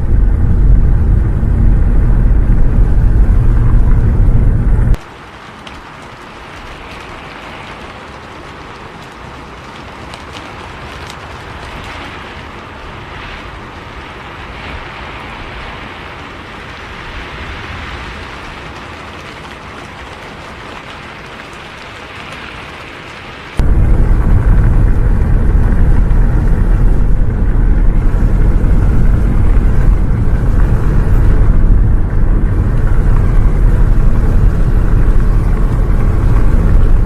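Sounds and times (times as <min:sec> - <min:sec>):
bus rumbling: 0:00.0 - 0:05.0, 0:23.6 - 0:37.0
rain on a bus: 0:00.0 - 0:37.0.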